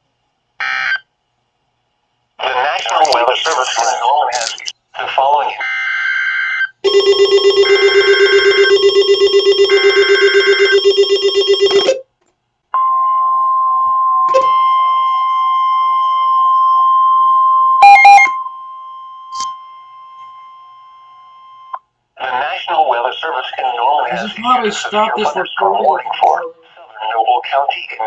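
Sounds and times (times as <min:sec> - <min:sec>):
pulsing electronic alarm: 0:05.8 - 0:12.0, 0:14.4 - 0:18.6.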